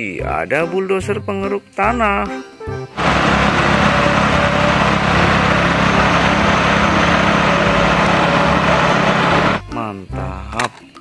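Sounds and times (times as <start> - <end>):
bulldozer engine running: 3.0 - 9.7.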